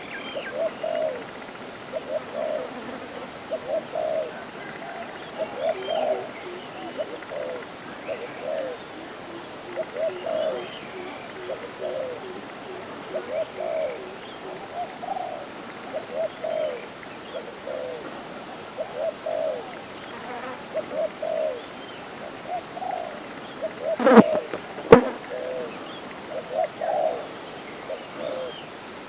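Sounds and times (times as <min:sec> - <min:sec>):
doves cooing: 0:00.4 - 0:01.2, 0:01.9 - 0:08.8, 0:11.4 - 0:12.4, 0:13.1 - 0:16.8, 0:26.4 - 0:27.3.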